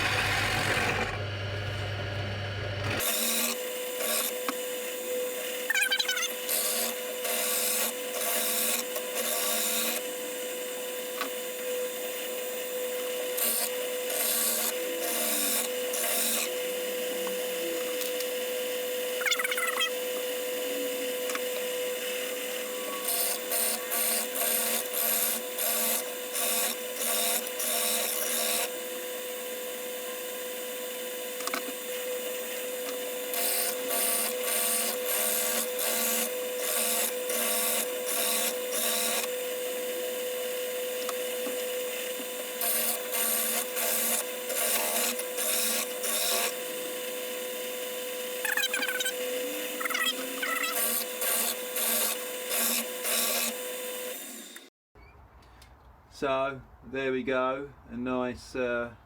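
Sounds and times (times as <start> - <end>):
rasping wood cutting passes: 0.0 - 1.4, 32.5 - 39.4
drill press motor humming: 0.0 - 54.7.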